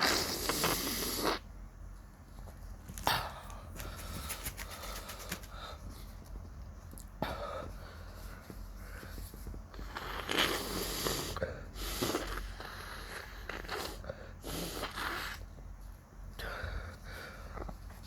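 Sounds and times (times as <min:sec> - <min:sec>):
person sniffling through nose: 0:00.0 - 0:01.4, 0:09.8 - 0:15.5.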